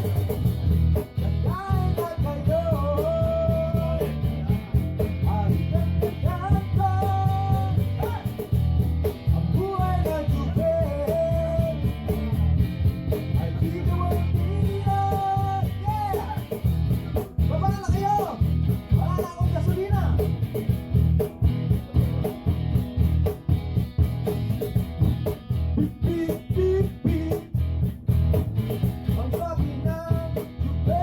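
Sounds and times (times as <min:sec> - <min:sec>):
person singing: 0:01.2 - 0:04.6, 0:05.2 - 0:08.4, 0:09.4 - 0:11.8, 0:13.3 - 0:16.5, 0:25.8 - 0:27.5, 0:29.2 - 0:31.0.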